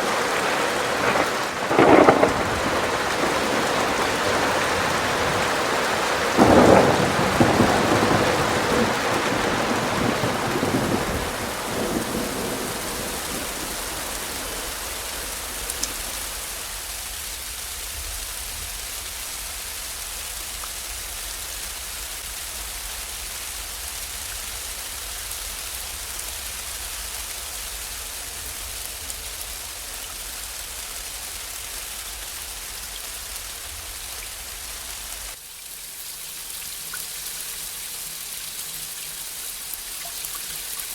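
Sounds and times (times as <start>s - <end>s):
thunder crack and rumble: 0.0s - 16.7s
steady rain falling: 0.0s - 40.9s.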